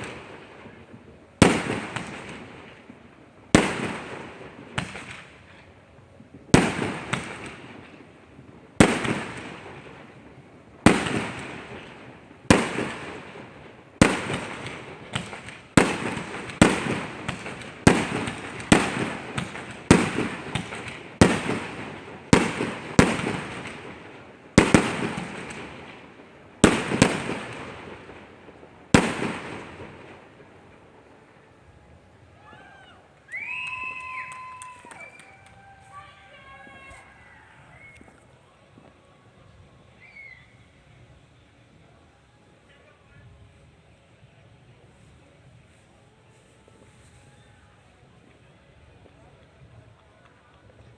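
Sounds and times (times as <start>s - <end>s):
fireworks bangs with echo: 0.0s - 5.7s, 6.3s - 31.3s.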